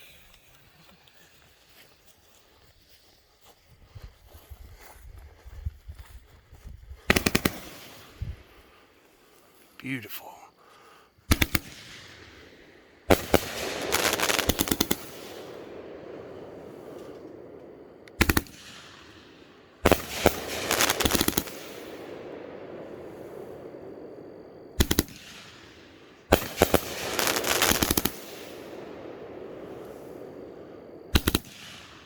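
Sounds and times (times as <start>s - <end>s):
rapid firework pops: 7.0s - 8.4s, 11.3s - 23.4s, 24.8s - 29.0s, 31.1s - 32.0s
firework double report: 7.0s - 9.5s, 11.2s - 32.0s.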